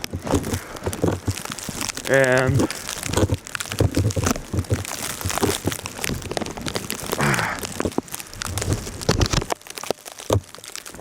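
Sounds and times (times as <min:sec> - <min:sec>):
footsteps crunching through snow: 0:00.0 - 0:11.0
person grunting: 0:07.2 - 0:07.7.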